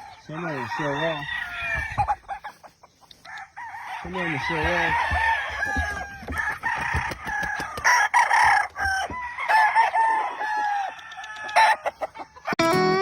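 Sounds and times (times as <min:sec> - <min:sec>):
roosters crowing and clucking: 0:00.0 - 0:13.0
guitar music: 0:12.6 - 0:13.0.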